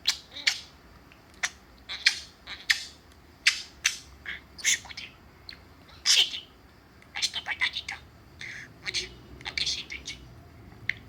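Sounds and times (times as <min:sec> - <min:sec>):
budgerigar chirping: 0:00.0 - 0:00.8, 0:01.4 - 0:06.5.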